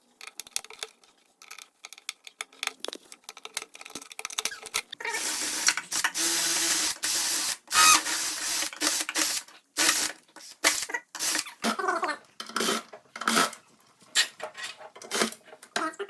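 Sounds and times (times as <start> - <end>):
hissing spray bursts: 5.2 - 11.5.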